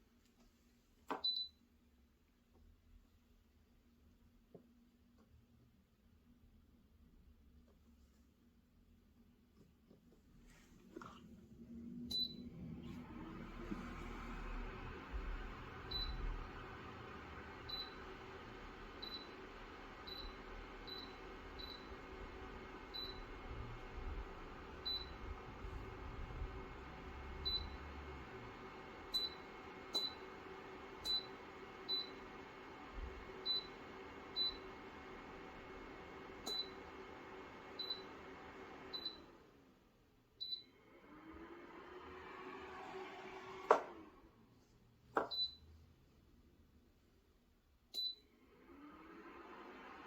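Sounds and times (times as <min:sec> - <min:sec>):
fan spinning up with whine: 0:10.5 - 0:39.8, 0:40.8 - 0:44.5, 0:48.4 - 0:50.0
fan heater humming: 0:10.5 - 0:39.9.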